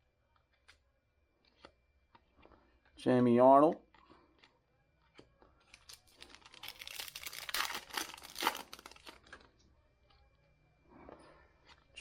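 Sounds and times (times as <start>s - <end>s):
foil wrapper tearing and crinkling: 5.7s - 9.3s.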